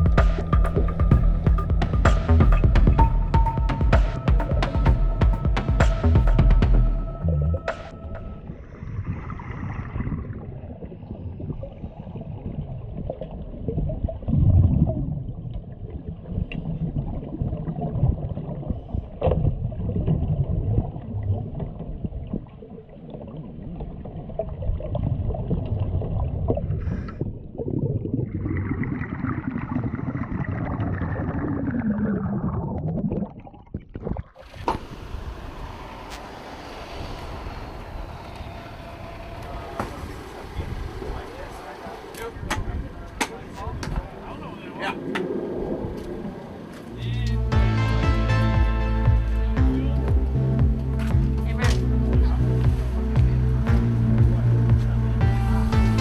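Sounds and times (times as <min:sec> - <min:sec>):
muffled rumble: 0:00.0 - 0:22.4, 0:48.5 - 0:56.0
water gurgling and sloshing: 0:00.0 - 0:47.6, 0:49.1 - 0:56.0
water rushing: 0:34.4 - 0:56.0.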